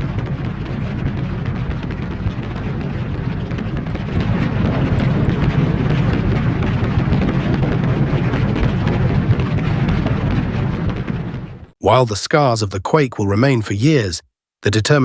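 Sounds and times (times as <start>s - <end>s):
loud rumbling: 0.0s - 12.0s
crackling: 0.0s - 12.4s.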